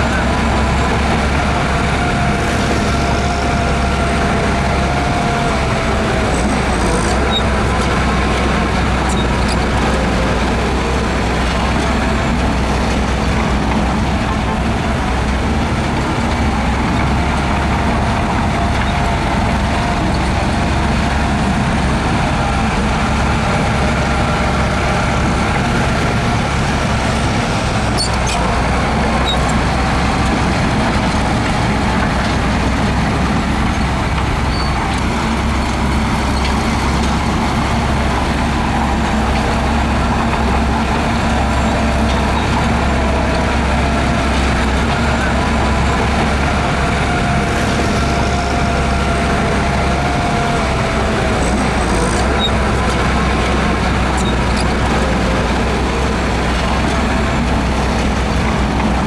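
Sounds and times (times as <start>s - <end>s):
heavy diesel machinery droning: 0.0s - 59.0s.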